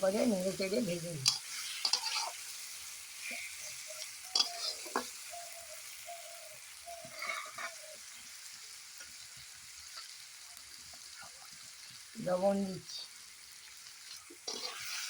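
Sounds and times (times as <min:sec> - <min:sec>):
vegetables sizzling in hot oil: 0:00.0 - 0:15.0
spatula stirring and scraping: 0:01.2 - 0:05.2, 0:07.0 - 0:08.0, 0:14.1 - 0:15.0.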